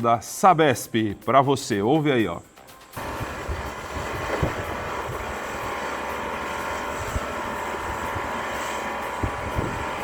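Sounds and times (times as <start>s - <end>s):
heavy machinery engine drone: 3.0s - 10.0s.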